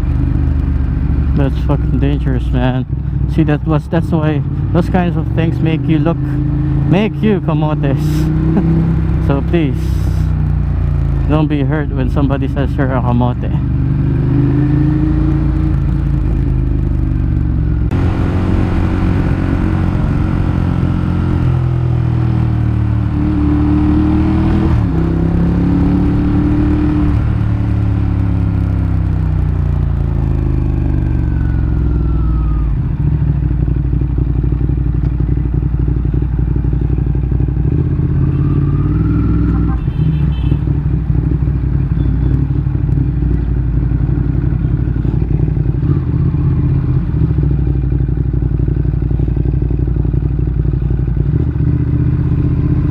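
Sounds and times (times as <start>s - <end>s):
motorcycle engine accelerating: 0.0s - 52.9s.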